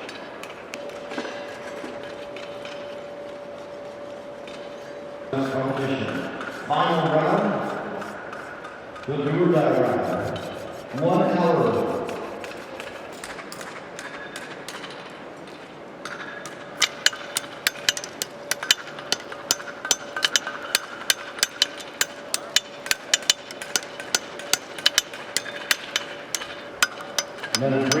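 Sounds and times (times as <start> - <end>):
hammers striking horseshoes on anvils: 11.8 - 15.1, 16.0 - 28.0
faint steady ring: 16.1 - 28.0.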